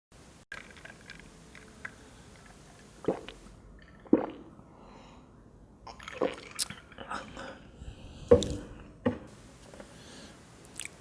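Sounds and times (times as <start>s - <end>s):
wet squishy eating: 0.5s - 4.6s, 5.9s - 8.9s, 9.6s - 11.0s
loud squelches: 10.6s - 11.0s.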